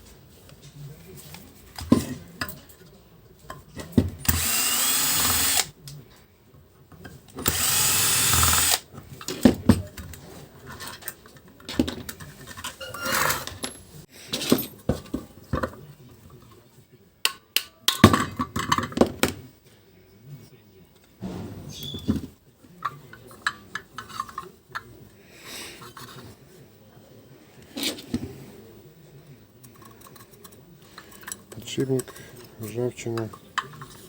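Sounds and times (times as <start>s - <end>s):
cordless screwdriver running: 4.3s - 5.7s, 7.4s - 8.8s.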